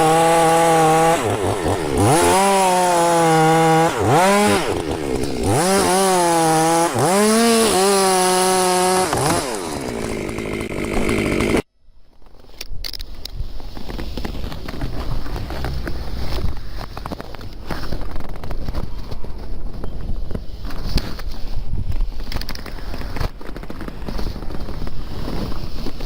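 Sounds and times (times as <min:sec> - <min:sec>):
chainsaw cutting wood: 0:00.0 - 0:11.7.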